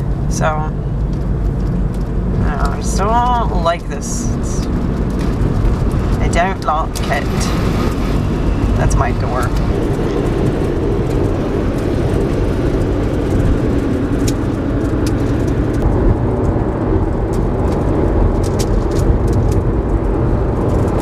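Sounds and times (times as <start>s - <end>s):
car cabin road and wind noise: 0.0s - 21.0s.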